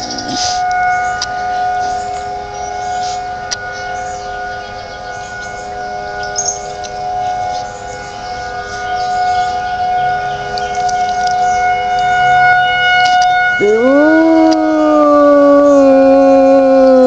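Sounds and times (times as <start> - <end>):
warning siren steady tone: 0.0 - 17.0
dog howling: 13.6 - 17.0.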